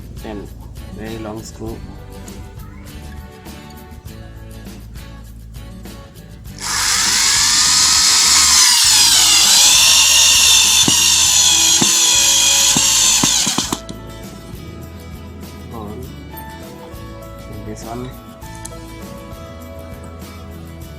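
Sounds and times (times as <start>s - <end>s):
power screwdriver motor whining: 6.6s - 13.8s
background music: 13.8s - 20.9s.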